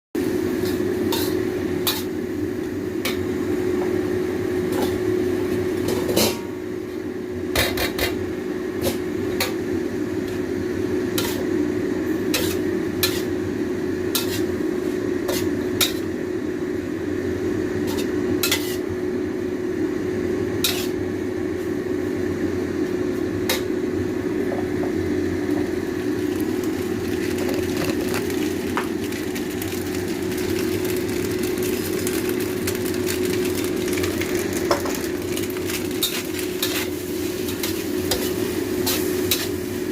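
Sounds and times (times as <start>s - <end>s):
steady hum: 9.7s - 39.9s.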